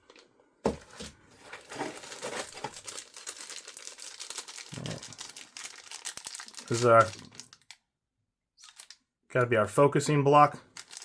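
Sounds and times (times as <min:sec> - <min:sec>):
packaging crinkling: 0:01.4 - 0:07.8, 0:08.6 - 0:09.0, 0:10.7 - 0:11.0.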